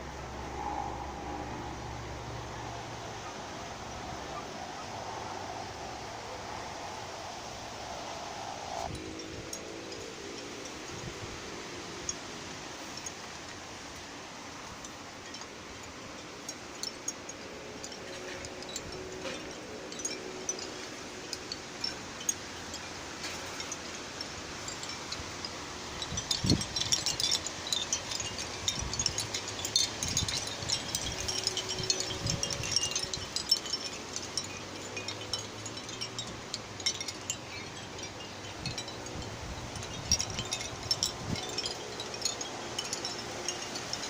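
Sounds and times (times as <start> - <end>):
seashell wind chime clinking: 8.8 - 44.0.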